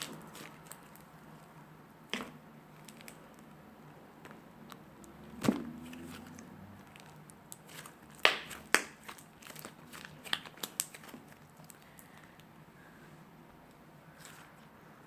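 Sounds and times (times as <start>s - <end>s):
slime popping and crackling: 0.0s - 1.1s, 5.0s - 12.1s
slime squeezed and stretched: 5.4s - 11.8s.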